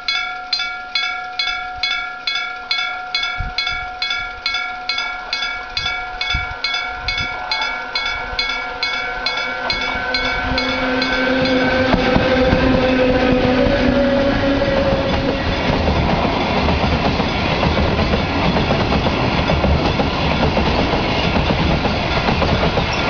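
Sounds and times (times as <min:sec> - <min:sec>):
level crossing bell ringing: 0:00.0 - 0:12.5
freight train passing: 0:00.0 - 0:23.0.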